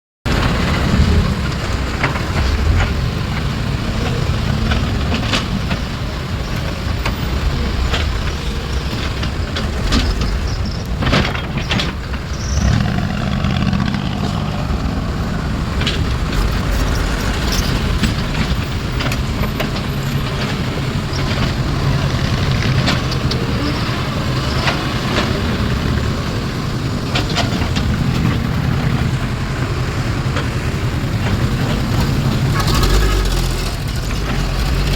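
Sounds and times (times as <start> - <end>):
heavy diesel engines running: 0.3 - 34.9
metal clanks and knocks: 0.6 - 23.5.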